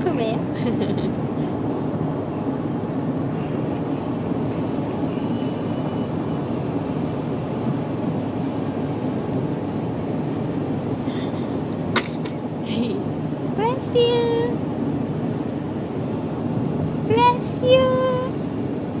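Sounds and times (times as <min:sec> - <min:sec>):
low rumbling background noise: 0:00.0 - 0:19.0.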